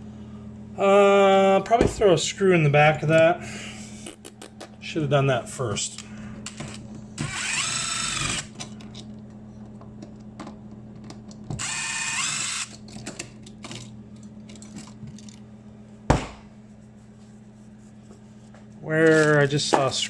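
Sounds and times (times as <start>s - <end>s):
power drill whining: 7.2s - 8.5s, 11.6s - 12.8s.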